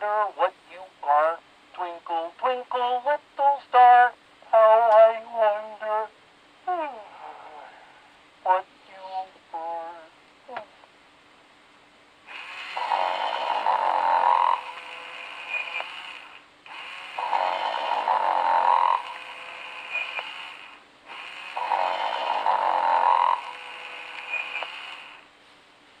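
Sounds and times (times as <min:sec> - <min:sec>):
toy doll snoring through speaker: 0:12.3 - 0:25.2.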